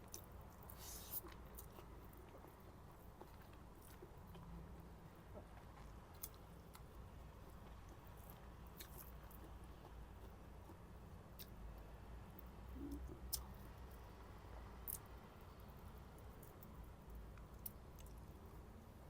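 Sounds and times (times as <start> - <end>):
faint chewing: 0.0 - 14.0, 17.3 - 18.5.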